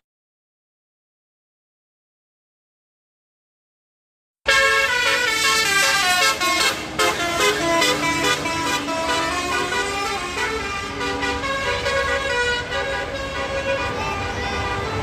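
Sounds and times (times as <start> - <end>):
bus horn melody: 4.5 - 15.0.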